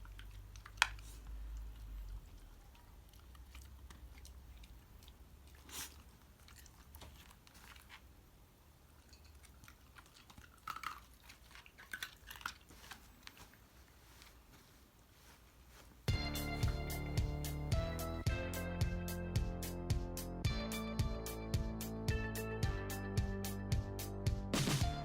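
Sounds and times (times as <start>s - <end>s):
dog crunching and chewing food: 0.0s - 14.5s.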